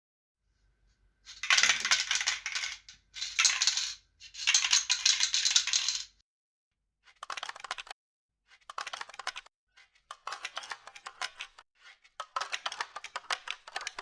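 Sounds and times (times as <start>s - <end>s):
spray can ball rattling: 1.3s - 6.1s.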